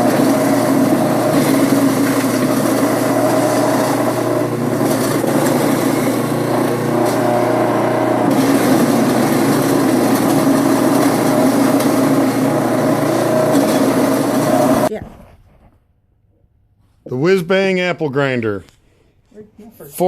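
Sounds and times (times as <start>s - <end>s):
apple grinder motor hum: 0.0s - 14.9s
apples grinding: 0.0s - 14.9s.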